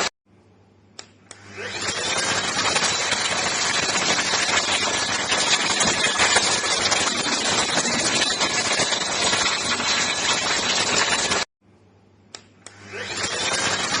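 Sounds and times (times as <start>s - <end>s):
clicks: 0.9s - 1.5s, 12.3s - 12.9s
handheld vacuum cleaner running: 1.3s - 11.5s, 12.7s - 14.0s.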